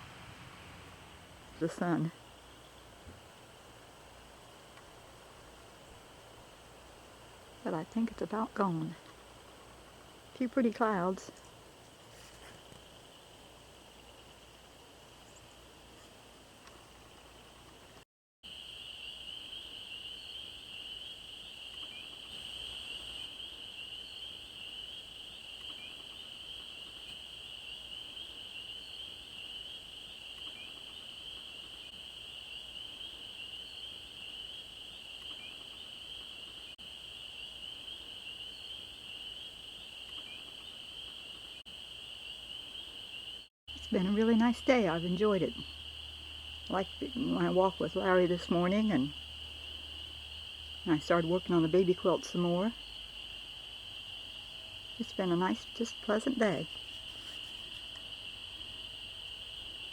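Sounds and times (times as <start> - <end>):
faint background hiss: 0.0 - 41.3
frogs trilling: 18.5 - 59.9.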